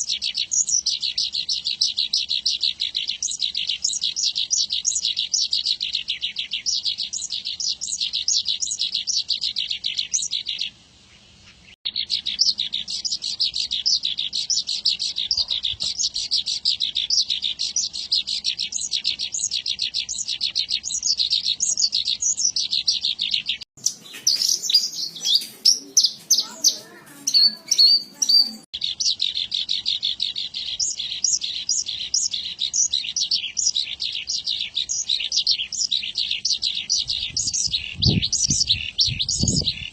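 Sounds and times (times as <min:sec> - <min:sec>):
bird singing high chirps and trills: 0:00.0 - 0:39.9.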